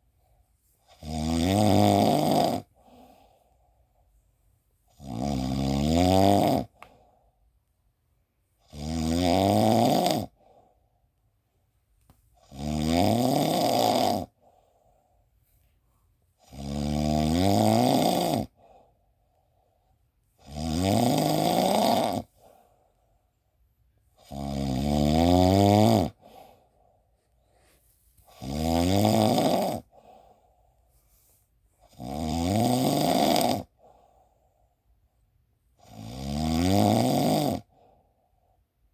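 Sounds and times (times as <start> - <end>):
quiet breaths: 0.0 - 1.0, 2.1 - 5.0, 6.6 - 8.6, 10.2 - 12.5, 14.1 - 16.8, 18.2 - 20.4, 21.2 - 24.4, 26.1 - 28.4, 29.3 - 32.0, 33.0 - 35.9, 37.6 - 38.9
person snoring: 0.9 - 3.1, 4.9 - 6.8, 8.7 - 10.4, 12.4 - 14.4, 16.4 - 18.6, 20.4 - 22.4, 24.2 - 26.6, 28.3 - 30.2, 31.8 - 33.8, 35.8 - 37.7.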